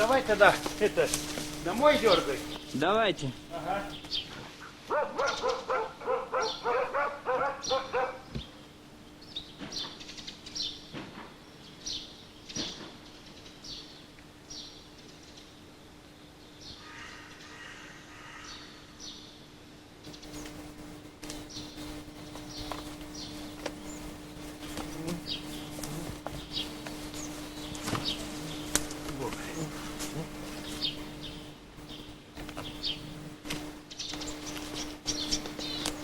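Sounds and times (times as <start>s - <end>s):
small birds chirping: 0.0s - 17.6s, 18.4s - 36.0s
faint steady hum: 0.0s - 36.0s
dog barking: 4.9s - 8.3s.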